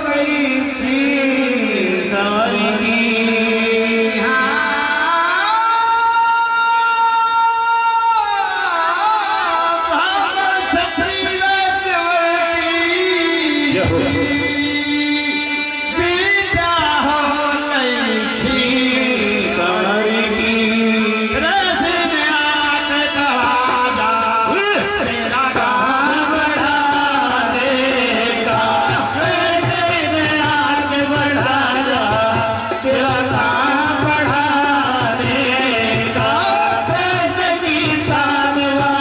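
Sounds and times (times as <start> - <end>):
man singing: 0.0 - 39.0
low drum beat: 23.1 - 39.0.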